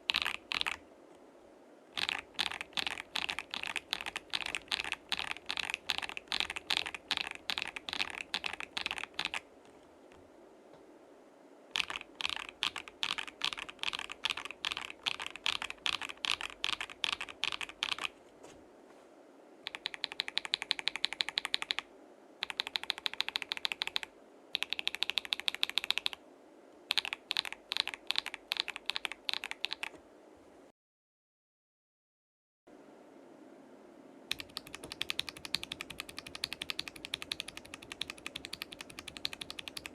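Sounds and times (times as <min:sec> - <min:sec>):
clacky keyboard keystrokes: 0:00.1 - 0:00.8, 0:02.0 - 0:09.4, 0:11.8 - 0:18.1, 0:19.7 - 0:21.8, 0:22.4 - 0:26.2, 0:26.9 - 0:29.9, 0:34.3 - 0:39.9.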